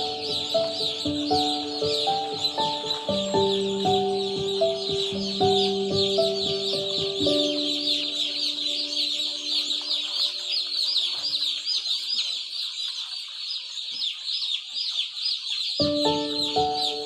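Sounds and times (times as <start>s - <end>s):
chicks peeping: 0.0s - 17.0s.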